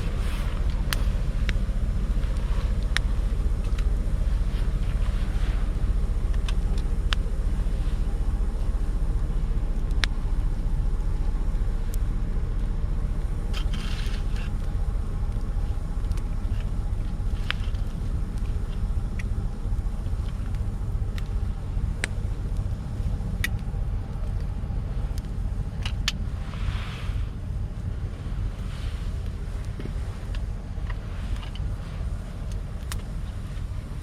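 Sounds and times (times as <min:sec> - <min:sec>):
low rumble: 0:00.0 - 0:34.0
campfire crackling and popping: 0:14.2 - 0:24.5, 0:32.4 - 0:33.7.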